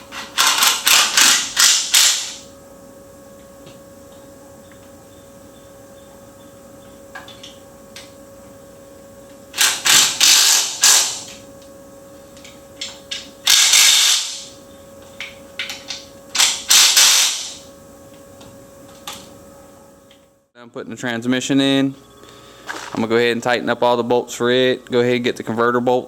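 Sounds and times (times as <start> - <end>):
faint steady hum: 0.0 - 26.0
power ratchet running: 0.1 - 2.4, 9.5 - 11.3, 13.4 - 14.6, 16.4 - 17.6.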